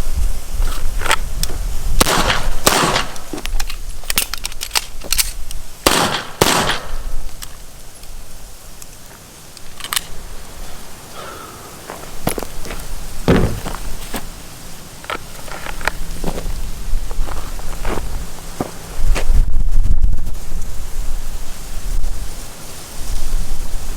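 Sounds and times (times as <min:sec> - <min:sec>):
gunshots: 0:02.0 - 0:03.2, 0:05.8 - 0:07.0.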